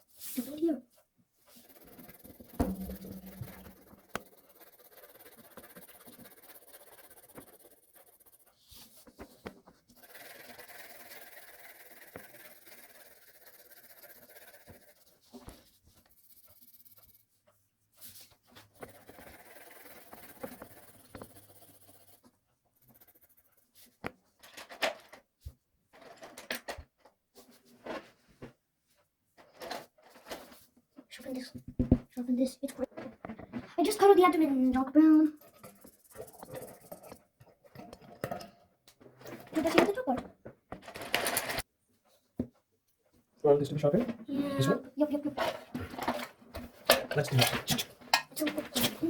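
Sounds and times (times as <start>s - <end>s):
coloured pencil scratching on paper: 0.0s - 24.5s, 33.8s - 37.8s.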